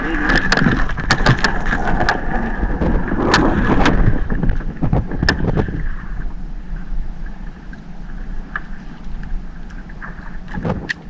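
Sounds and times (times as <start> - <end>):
boat engine running: 0.0 - 11.0
sharp knocks and clicks: 0.3 - 2.2, 2.8 - 5.8.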